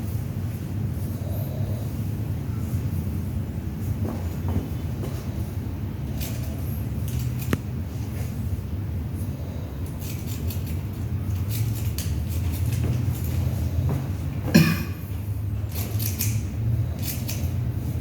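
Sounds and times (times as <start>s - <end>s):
steady low hum: 0.0s - 18.0s
scissors snipping hair: 6.1s - 7.7s, 9.8s - 13.5s, 15.7s - 17.7s.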